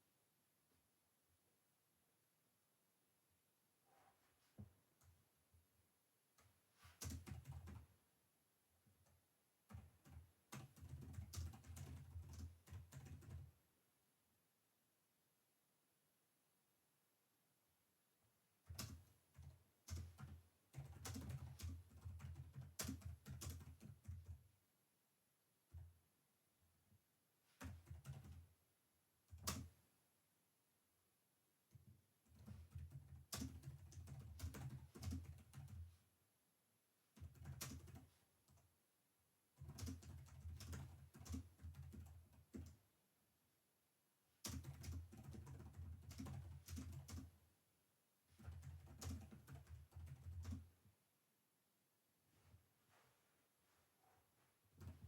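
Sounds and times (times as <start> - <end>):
typing on computer keyboard: 7.0 - 7.9, 9.0 - 13.6, 18.7 - 24.5, 27.6 - 28.5, 29.3 - 29.8, 31.7 - 35.9, 37.2 - 38.7, 39.6 - 42.8, 44.4 - 47.4, 48.4 - 50.7.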